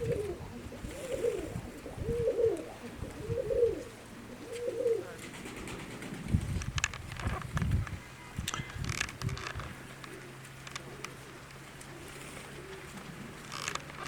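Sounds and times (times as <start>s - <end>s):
pigeon cooing: 0.0s - 6.3s, 9.6s - 14.0s.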